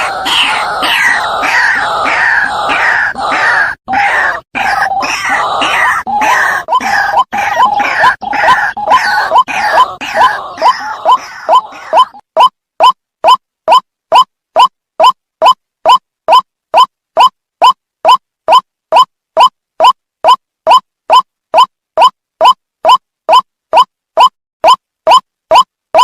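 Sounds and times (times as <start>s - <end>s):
waterhen calls: 0.1s - 12.2s.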